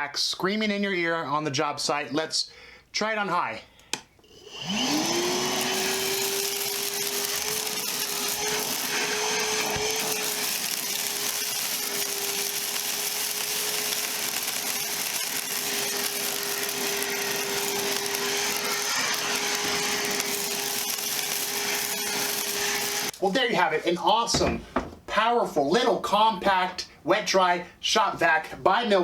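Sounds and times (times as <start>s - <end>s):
shop vacuum motor whining: 4.2s - 23.2s.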